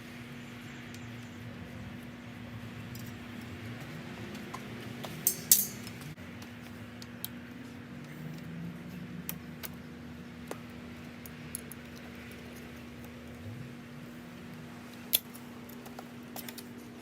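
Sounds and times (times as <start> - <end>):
metal tool clicks and clinks: 5.0 - 6.0
sharp metal clatter: 5.2 - 6.0.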